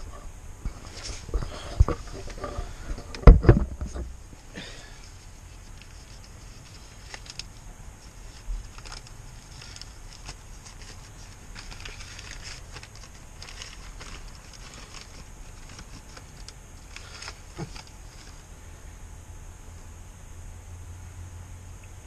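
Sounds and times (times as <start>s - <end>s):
paper crinkling and rustling: 4.6s - 18.5s.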